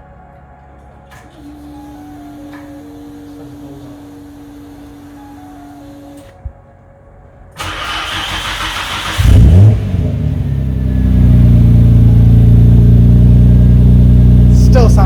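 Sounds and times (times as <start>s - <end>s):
starter motor cranking: 1.1s - 6.4s, 7.6s - 9.8s
car engine revving and idling: 7.6s - 15.0s.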